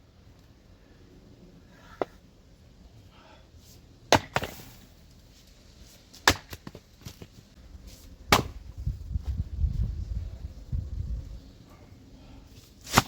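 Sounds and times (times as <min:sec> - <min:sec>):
axe chopping firewood: 0:04.1 - 0:04.8, 0:06.1 - 0:07.3, 0:08.3 - 0:08.6.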